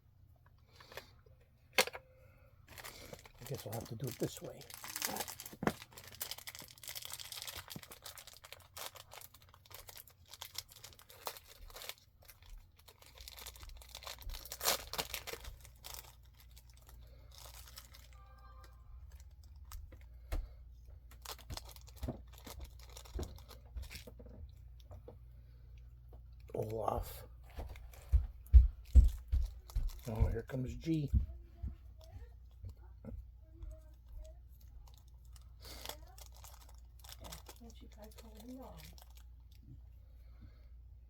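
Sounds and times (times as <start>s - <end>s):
packaging tearing and crinkling: 2.7s - 18.2s, 21.1s - 24.1s, 34.8s - 39.3s.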